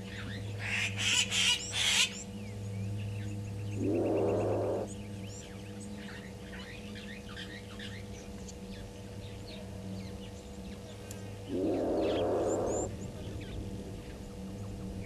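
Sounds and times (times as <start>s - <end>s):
birds chirping: 0.0s - 14.8s
steady low hum: 0.0s - 15.0s.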